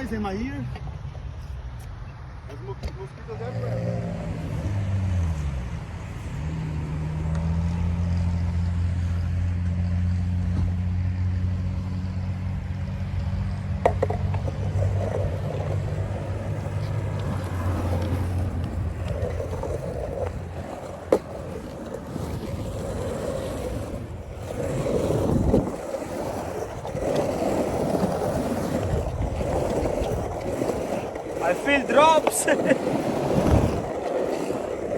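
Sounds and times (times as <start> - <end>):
skateboard wheels rolling on concrete: 0.0 - 34.9
skateboard clacks: 13.0 - 34.9.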